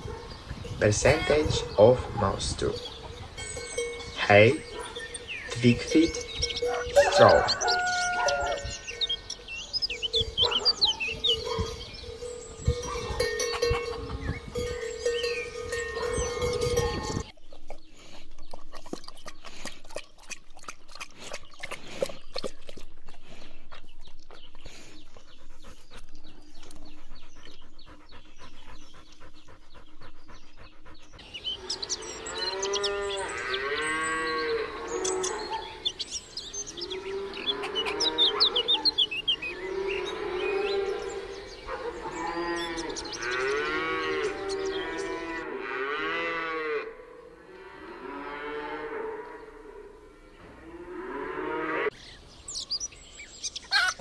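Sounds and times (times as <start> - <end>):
cattle mooing: 5.7 - 8.7, 31.6 - 35.7, 36.8 - 38.9, 39.5 - 52.0.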